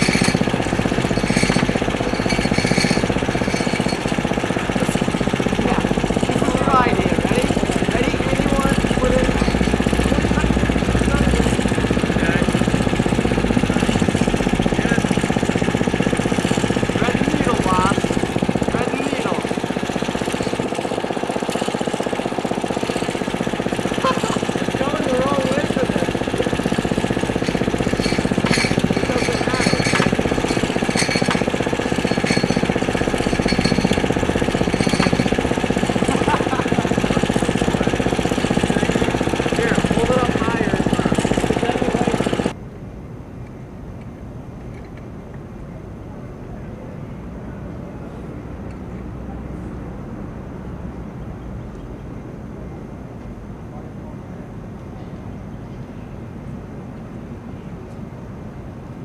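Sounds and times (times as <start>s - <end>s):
sharp metallic clinks: 0.0s - 5.4s, 6.1s - 11.8s, 23.9s - 42.5s
gasoline engine running steadily: 0.0s - 42.6s.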